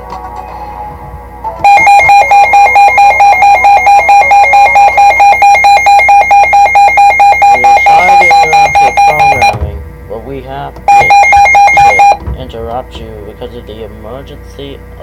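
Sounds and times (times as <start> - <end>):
quiet electronic music: 0.0 - 15.0
rapid electronic alarm beeps: 1.6 - 9.6, 10.9 - 12.2.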